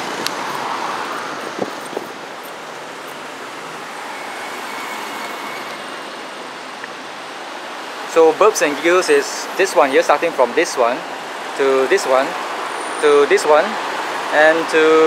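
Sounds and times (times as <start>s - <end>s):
vehicle passing: 0.0s - 9.7s
steady hum of traffic: 0.0s - 15.0s.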